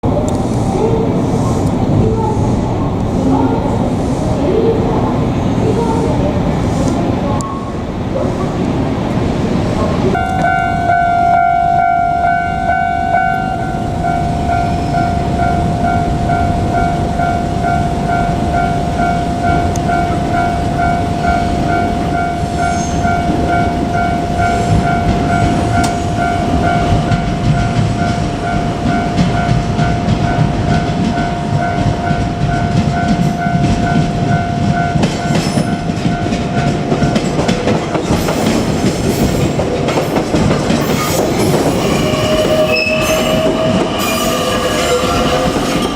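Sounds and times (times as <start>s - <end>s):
train rumble and wheel clatter: 0.0s - 45.9s
level crossing bell ringing: 10.2s - 37.2s.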